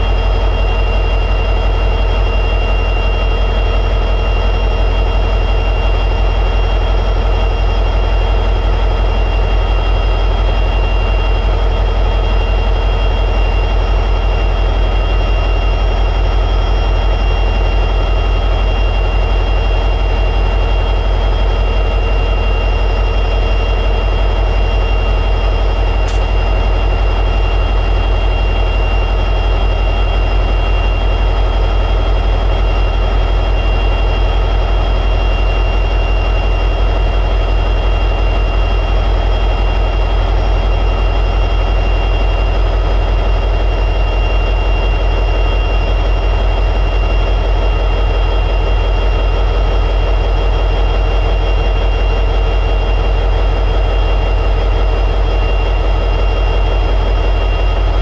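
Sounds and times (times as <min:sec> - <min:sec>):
diesel locomotive engine idling: 0:00.0 - 0:58.0
high whine: 0:00.0 - 0:58.0
brief click: 0:26.0 - 0:26.3.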